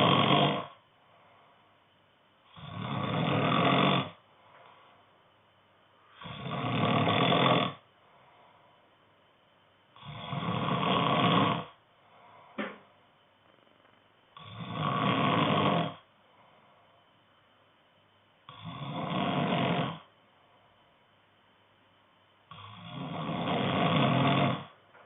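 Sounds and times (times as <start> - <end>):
man snoring: 0.0 - 0.8, 2.5 - 4.2, 6.1 - 7.9, 10.0 - 11.8, 14.4 - 16.1, 18.5 - 20.1, 22.5 - 24.8
quiet breathing: 0.0 - 10.8, 11.4 - 21.2.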